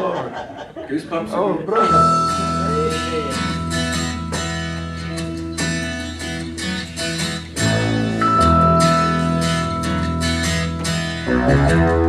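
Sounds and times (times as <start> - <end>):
held chords: 1.8 - 12.0
strummed guitar: 1.8 - 12.0
low bass line: 1.9 - 12.0.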